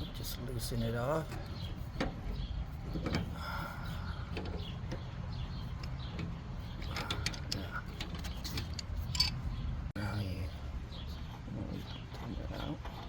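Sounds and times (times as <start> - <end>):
wrench metallic clicks and creaks: 5.8 - 9.4.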